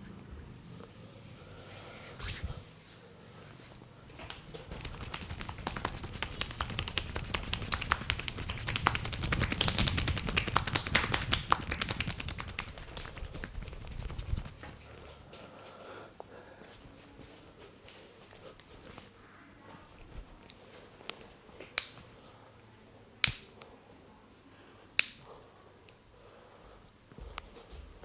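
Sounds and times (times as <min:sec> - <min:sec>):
hands slapping on skin: 0:04.2 - 0:14.8, 0:23.2 - 0:23.5, 0:25.0 - 0:25.2.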